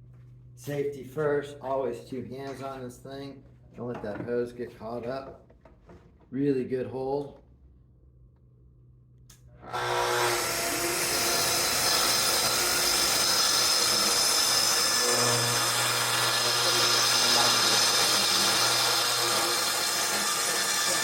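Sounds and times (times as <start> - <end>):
track saw cutting wood: 9.6 - 21.0.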